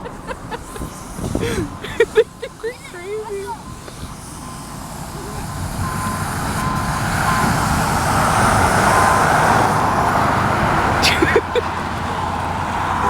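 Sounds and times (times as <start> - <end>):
truck passing on road: 0.0 - 13.0.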